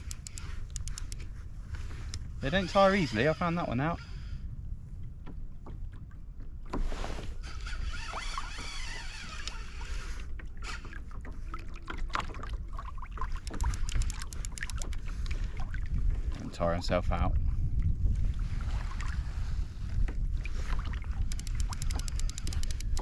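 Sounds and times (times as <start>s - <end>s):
fishing reel clicking: 0.0s - 1.3s, 7.5s - 10.0s, 13.4s - 15.1s, 21.2s - 23.0s
water against kayak: 0.0s - 23.0s
wind on microphone: 0.0s - 23.0s.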